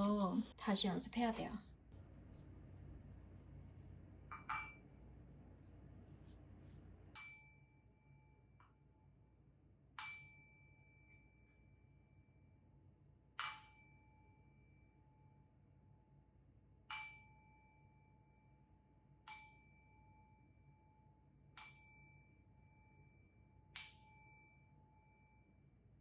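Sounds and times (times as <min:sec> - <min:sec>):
singing bowl ringing: 0:04.3 - 0:04.9.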